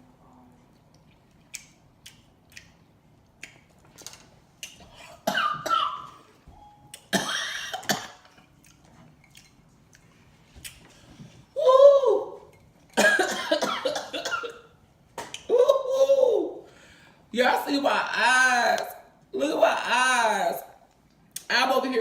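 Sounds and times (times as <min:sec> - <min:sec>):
woman chewing: 0:00.5 - 0:05.3, 0:08.2 - 0:11.5
woman coughing: 0:05.2 - 0:06.1, 0:07.1 - 0:08.2, 0:13.0 - 0:14.7.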